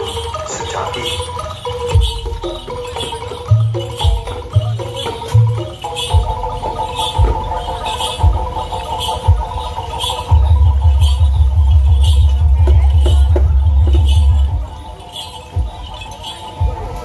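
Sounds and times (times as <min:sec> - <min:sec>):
heavy drum beats: 0:00.0 - 0:17.0
pitched melody: 0:00.0 - 0:17.0.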